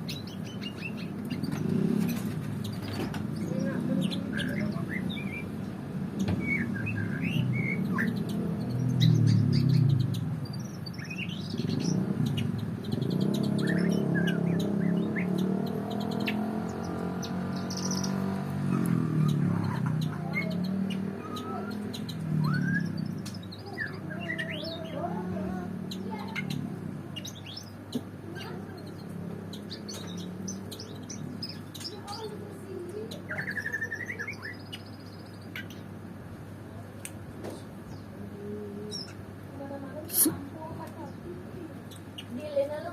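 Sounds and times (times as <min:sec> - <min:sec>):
songbirds chirping and singing: 0:00.0 - 0:42.9.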